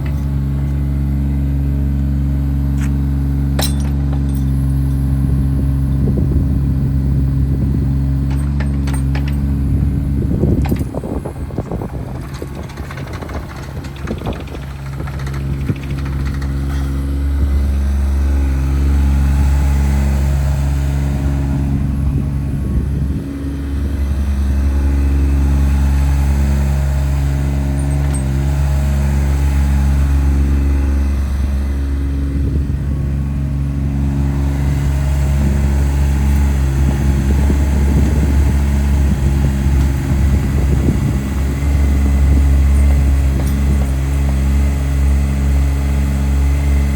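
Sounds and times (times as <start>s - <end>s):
excavator diesel engine running: 0.0s - 46.9s
clicks and knocks: 8.3s - 9.6s, 11.9s - 17.0s.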